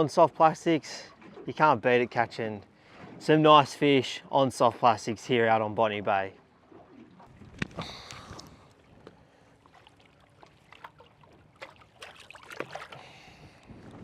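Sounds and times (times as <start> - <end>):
water splashing and trickling: 0.0 - 14.0.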